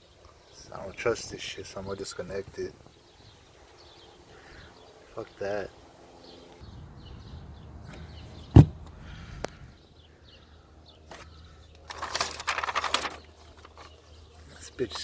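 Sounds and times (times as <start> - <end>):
loud knock: 8.6 - 8.8
rustling: 11.9 - 14.0.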